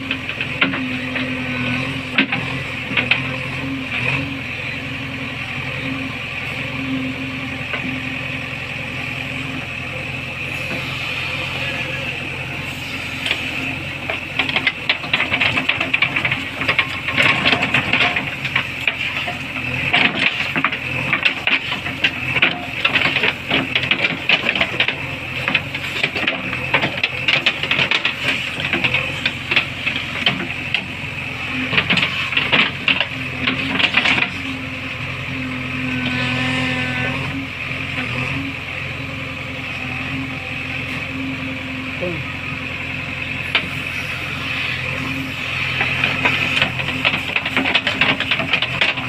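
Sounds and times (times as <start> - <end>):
diesel engine running with whine: 0.0 - 49.0
rapid clicking and rattling: 14.1 - 30.9, 45.8 - 49.0.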